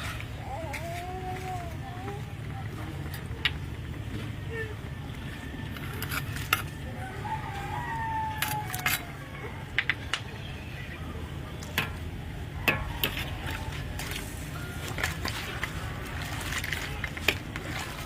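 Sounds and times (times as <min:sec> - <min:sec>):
rooster crowing: 0:06.8 - 0:09.5.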